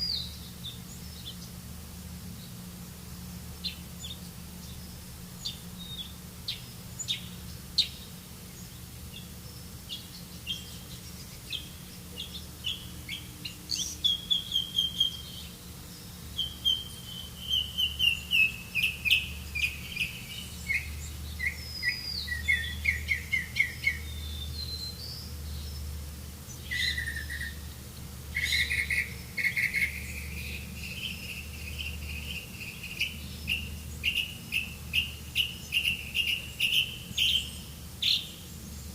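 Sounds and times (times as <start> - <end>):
songbirds chirping and trilling: 0.0 - 38.9
steady low hum: 0.0 - 38.9.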